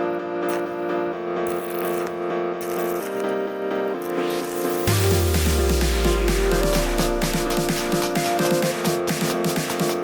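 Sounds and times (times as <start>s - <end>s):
electronic music with synth: 0.0s - 10.0s.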